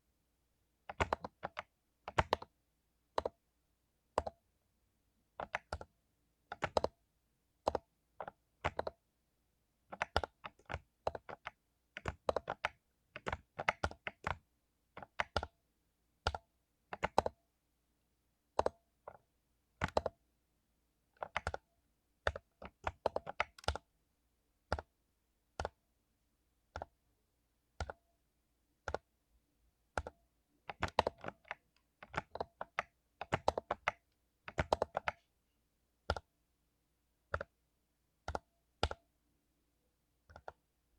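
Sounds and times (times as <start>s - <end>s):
mechanical keyboard typing: 0.9s - 3.4s, 5.4s - 5.9s, 6.5s - 7.0s, 7.6s - 9.0s, 9.9s - 15.6s, 16.2s - 17.4s, 18.5s - 19.2s, 19.8s - 20.2s, 21.2s - 23.9s, 25.5s - 25.8s, 26.7s - 27.0s, 27.7s - 28.0s, 28.8s - 29.1s, 29.9s - 35.3s, 36.0s - 36.3s, 37.3s - 37.6s, 38.2s - 39.0s, 40.2s - 40.6s.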